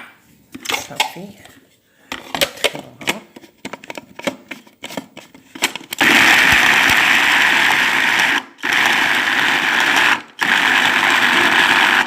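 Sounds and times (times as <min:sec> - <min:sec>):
electric grinder running: 0:06.0 - 0:12.0.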